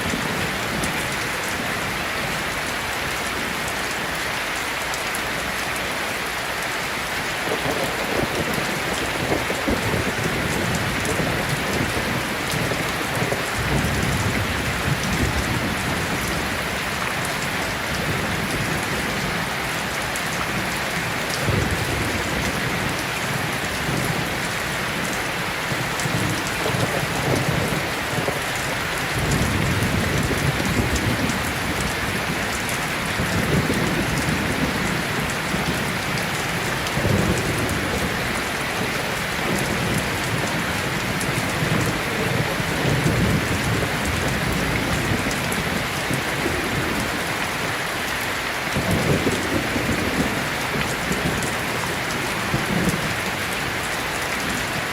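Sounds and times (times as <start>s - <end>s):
heavy rain pattering: 0.0s - 54.9s
rolling thunder: 7.4s - 16.6s, 17.9s - 47.3s.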